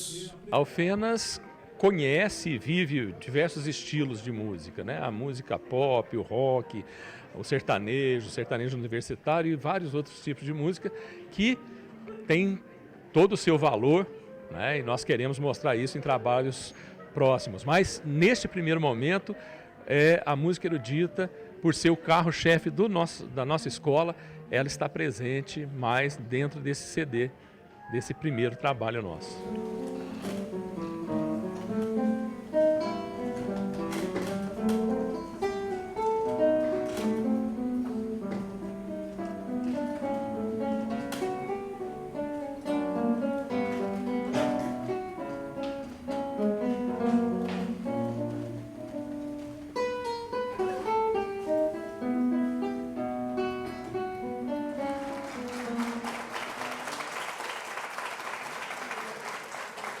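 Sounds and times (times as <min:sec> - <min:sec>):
acoustic guitar classical piece: 0:29.2 - 0:56.8
audience applause: 0:54.8 - 1:00.0.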